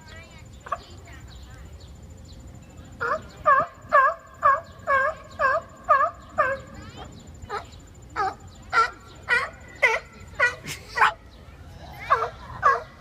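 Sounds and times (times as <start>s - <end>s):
seals calling: 3.0s - 13.0s.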